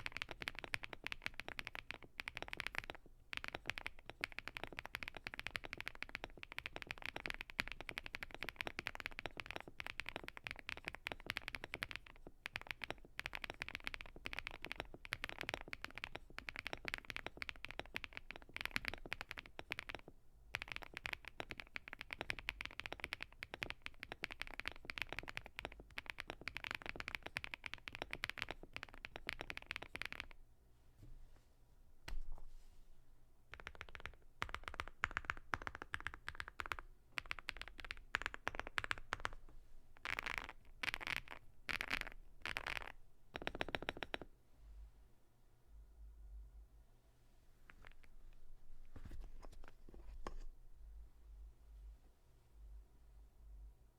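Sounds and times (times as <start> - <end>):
fast typing on mechanical keyboard: 0.0 - 30.4, 33.5 - 39.4, 40.0 - 44.3.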